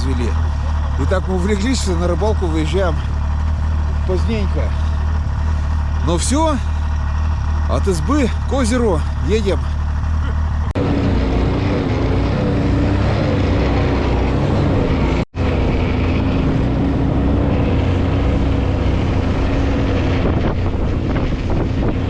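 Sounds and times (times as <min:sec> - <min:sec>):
vehicle engine running: 0:00.0 - 0:22.0
wind rushing over microphone: 0:11.2 - 0:22.0.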